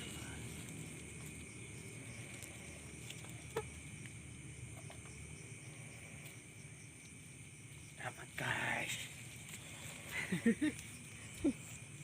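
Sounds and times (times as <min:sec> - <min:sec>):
crickets chirping drone: 0:00.0 - 0:12.0.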